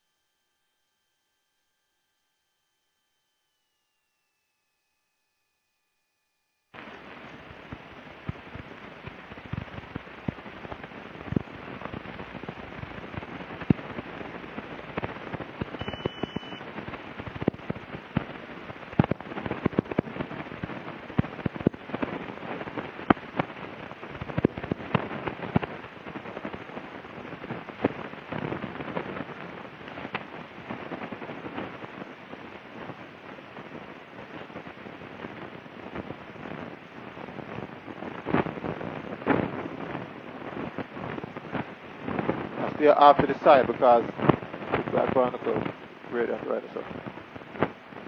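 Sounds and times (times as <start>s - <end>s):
rain pattering: 6.7s - 48.0s
sharp raindrop ticks: 6.8s - 32.1s, 40.6s - 48.0s.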